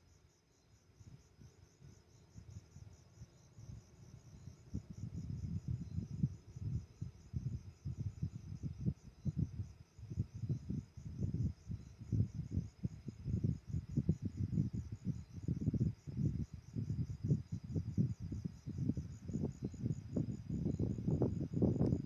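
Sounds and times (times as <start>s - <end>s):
crickets chirping: 0.0s - 22.0s
wind rumbling on microphone: 1.0s - 22.0s.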